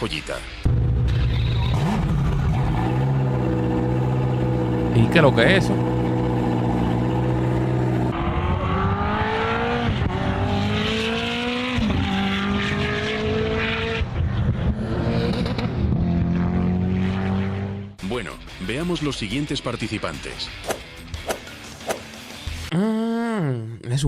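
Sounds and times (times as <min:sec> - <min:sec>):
car engine accelerating through gears: 0:00.7 - 0:18.0.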